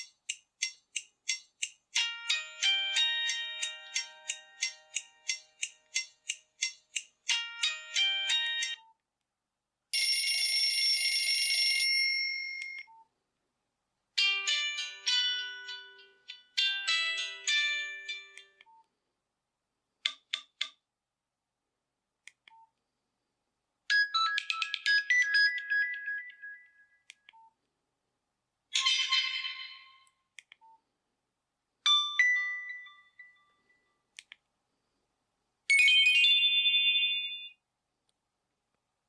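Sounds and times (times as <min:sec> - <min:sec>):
phone ringtones and alert tones: 0:02.0 - 0:05.9, 0:07.3 - 0:09.0, 0:14.2 - 0:18.6, 0:23.9 - 0:27.5, 0:28.8 - 0:30.1, 0:31.9 - 0:33.8, 0:35.7 - 0:37.6.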